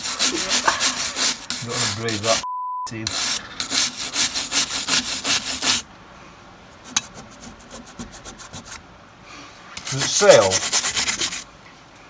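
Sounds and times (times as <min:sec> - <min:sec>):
wire brush scrubbing metal: 0:00.0 - 0:02.4, 0:03.0 - 0:05.8, 0:06.8 - 0:08.8, 0:09.8 - 0:11.5.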